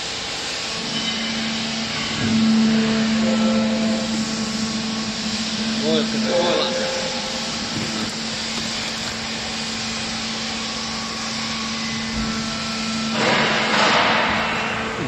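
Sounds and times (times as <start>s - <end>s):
machine hissing and humming: 0.0s - 15.0s.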